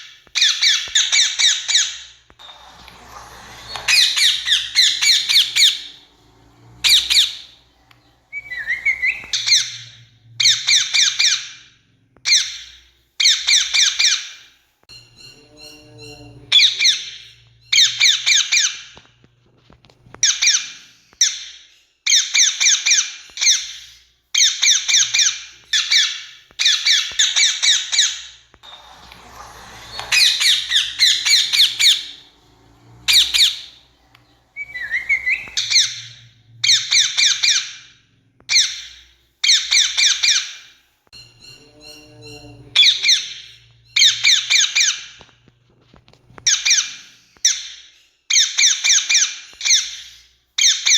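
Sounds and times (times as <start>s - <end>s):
parakeet screeching: 0.4s - 14.4s, 15.1s - 19.0s, 20.2s - 37.9s, 38.5s - 45.2s
soft parakeet call: 34.6s - 37.9s.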